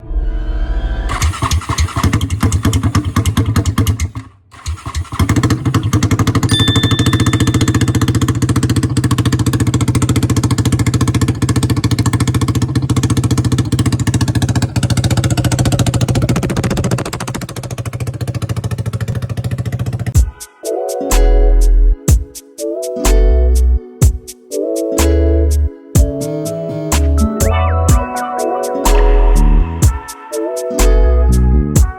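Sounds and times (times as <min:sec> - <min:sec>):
atv engine running hard: 0:01.1 - 0:20.2.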